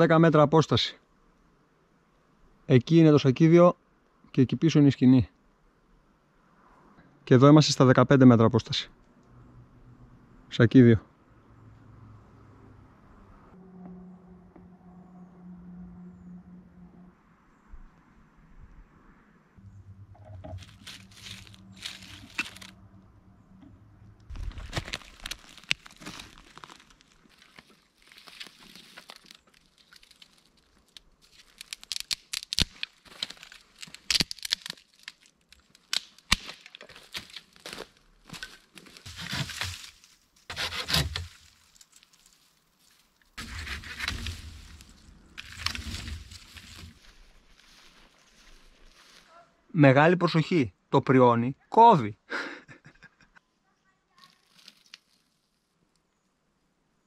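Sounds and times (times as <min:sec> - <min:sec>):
crunching: 0:20.3 - 0:22.8, 0:24.3 - 0:49.3
twigs crackling and snapping: 0:20.4 - 0:22.8, 0:24.2 - 0:49.2, 0:54.2 - 0:56.1
rustling in forest litter: 0:20.6 - 0:22.8, 0:24.3 - 0:49.4, 0:54.1 - 0:55.8.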